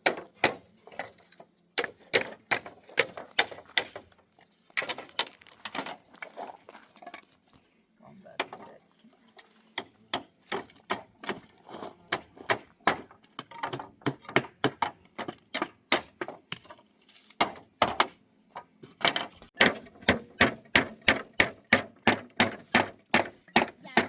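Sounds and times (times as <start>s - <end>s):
hammer striking wood: 0.0s - 0.7s, 1.8s - 4.1s, 9.8s - 11.5s, 12.1s - 16.4s, 17.4s - 18.2s, 19.0s - 24.0s.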